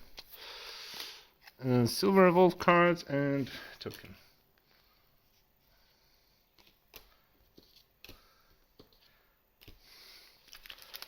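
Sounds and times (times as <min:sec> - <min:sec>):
cards and foil pack rustling: 0:06.6 - 0:11.0.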